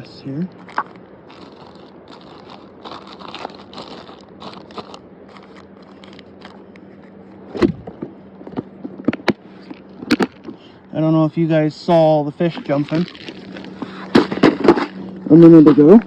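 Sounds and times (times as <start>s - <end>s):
faint steady hum: 0.0s - 16.0s
packaging rustling and crackling: 0.6s - 7.1s, 12.6s - 15.0s.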